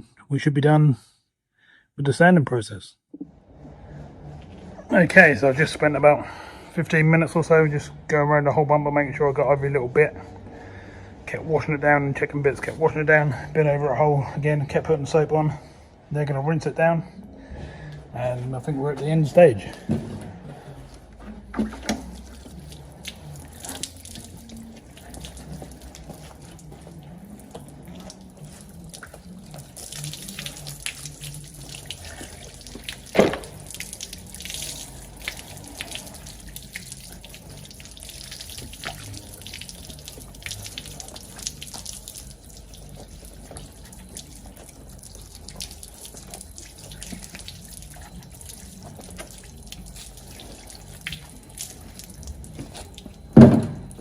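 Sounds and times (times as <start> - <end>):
water splashing and dripping: 21.4 - 54.0.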